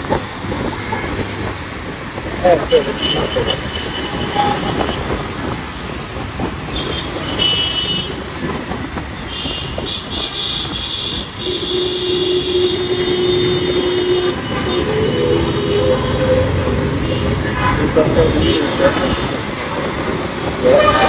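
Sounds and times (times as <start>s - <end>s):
road traffic: 0.0s - 21.0s
short high horn toots: 11.4s - 19.6s
long low horn blast: 11.5s - 21.0s.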